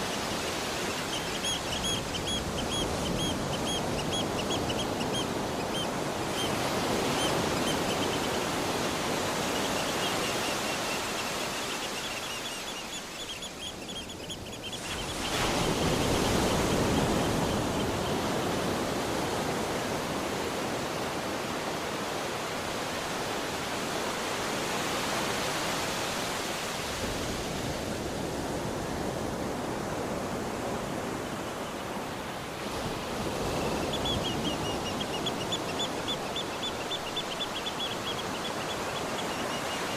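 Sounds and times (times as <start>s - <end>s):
bird high calls: 0.0s - 18.1s, 33.6s - 39.9s
ocean waves washing on beach: 0.0s - 39.9s.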